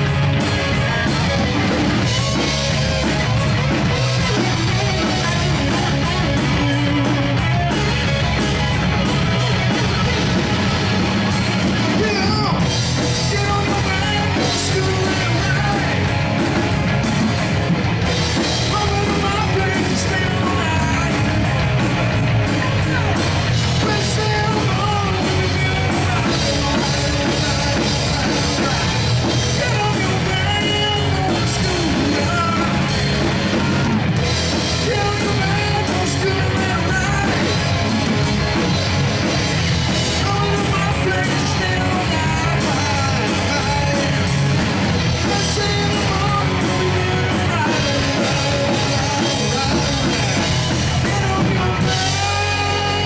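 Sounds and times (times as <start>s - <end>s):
bass guitar: 0.0s - 53.0s
drums: 0.0s - 53.0s
electric guitar: 0.0s - 53.0s
person singing: 11.8s - 16.1s, 18.6s - 21.5s, 22.6s - 33.8s, 34.7s - 37.7s, 40.1s - 44.5s, 45.1s - 53.0s.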